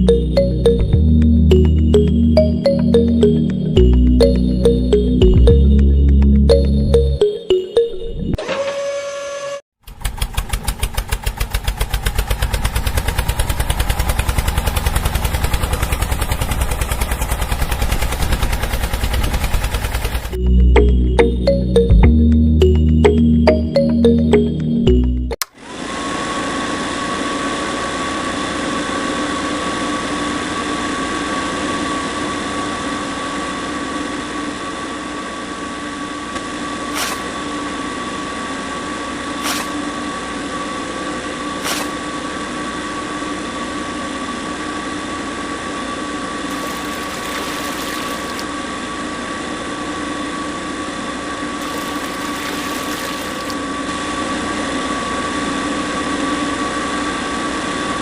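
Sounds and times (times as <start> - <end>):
small electric motor whining: 51.6 - 53.6.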